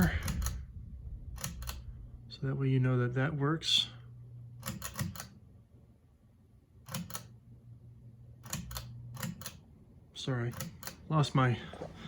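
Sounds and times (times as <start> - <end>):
ceiling fan control clicks: 0.0 - 2.2, 4.5 - 5.4, 6.8 - 7.4, 8.4 - 11.2
faint low hum: 0.0 - 12.0.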